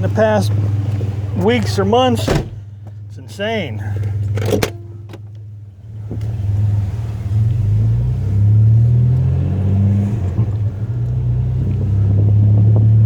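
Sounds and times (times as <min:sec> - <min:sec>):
truck engine pulling away: 0:03.8 - 0:13.0.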